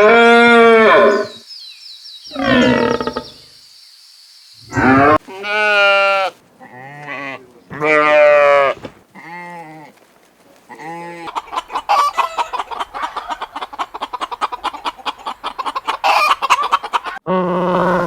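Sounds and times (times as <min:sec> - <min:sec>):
loud chicken call: 0:02.3 - 0:03.4, 0:04.6 - 0:07.0, 0:10.8 - 0:13.9, 0:14.7 - 0:18.0
short bleats: 0:02.4 - 0:03.2, 0:04.7 - 0:09.9
chickens clucking: 0:10.2 - 0:17.2.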